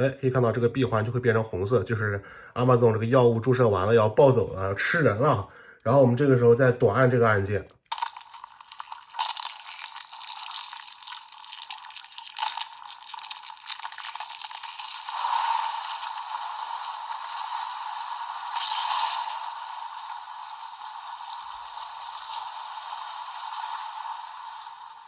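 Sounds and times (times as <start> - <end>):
toy belt transformation sound effect: 7.9 - 25.0.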